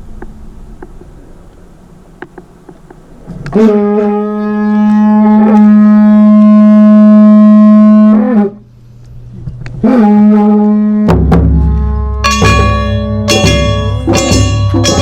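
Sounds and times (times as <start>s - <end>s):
horn blowing long note: 3.5s - 8.6s, 9.8s - 15.0s.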